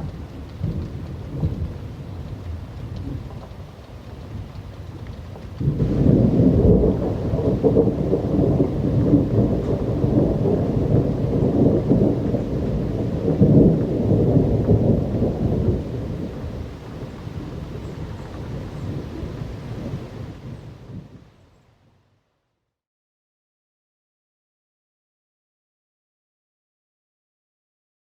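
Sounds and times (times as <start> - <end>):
thunder rumbling: 0.0 - 21.4
steady rainfall: 0.0 - 22.0.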